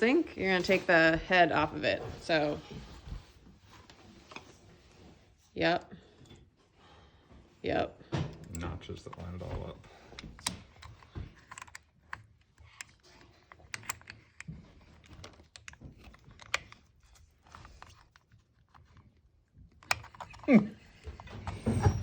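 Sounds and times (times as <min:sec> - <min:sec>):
faucet parts clicking and tapping: 0:10.1 - 0:16.8.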